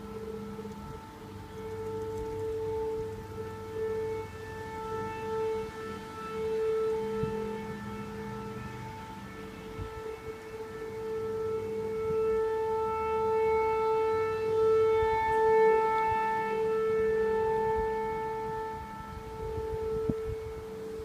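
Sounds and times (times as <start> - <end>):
siren-like droning tone: 0.0 - 21.0.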